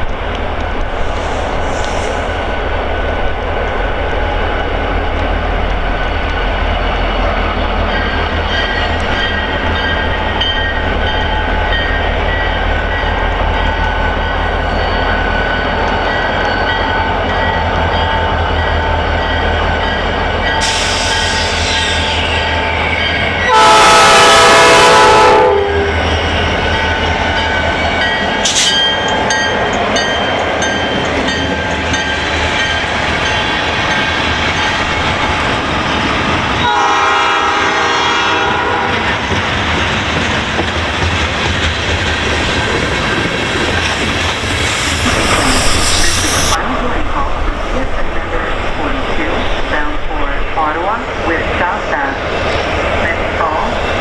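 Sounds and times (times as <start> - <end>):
diesel locomotives rumbling: 0.0 - 54.0
train horn blast: 23.5 - 26.0, 36.6 - 39.1.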